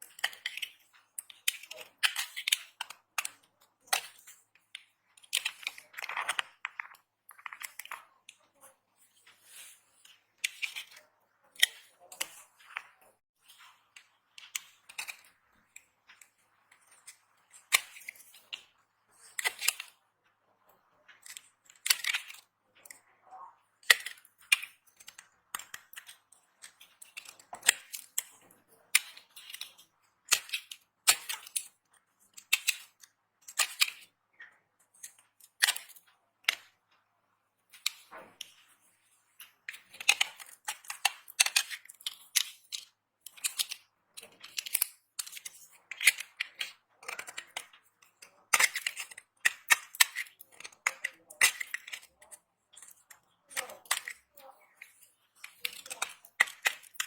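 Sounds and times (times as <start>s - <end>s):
soap crunching and snapping: 0.1s - 4.0s, 14.4s - 16.3s, 21.2s - 23.0s, 39.4s - 57.0s.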